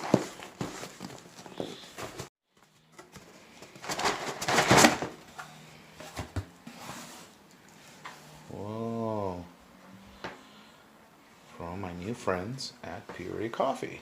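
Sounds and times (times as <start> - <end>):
package rustling: 3.0 - 5.2.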